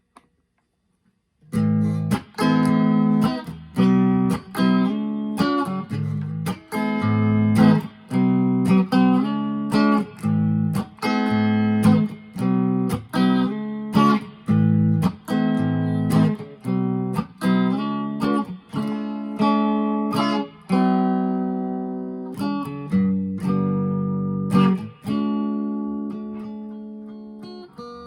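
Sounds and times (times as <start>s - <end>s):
electric guitar chords strummed: 1.5s - 28.0s.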